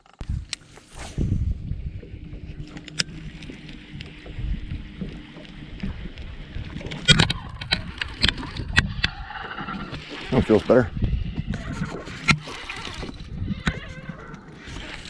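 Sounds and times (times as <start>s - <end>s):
faint steady hum: 0.1s - 15.0s
sharp knocks and clicks: 2.1s - 9.2s.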